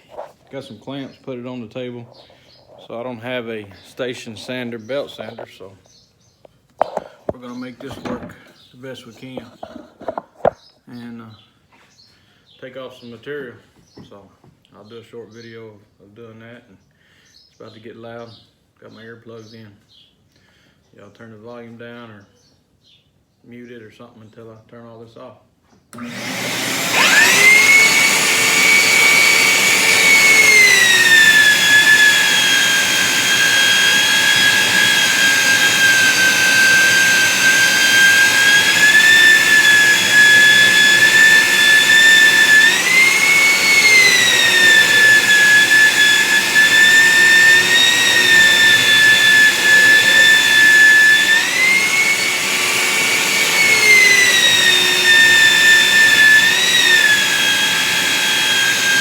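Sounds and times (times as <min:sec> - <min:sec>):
electric sander whining: 0:00.0 - 0:00.3, 0:06.8 - 0:08.4, 0:09.3 - 0:10.6, 0:26.0 - 0:59.0.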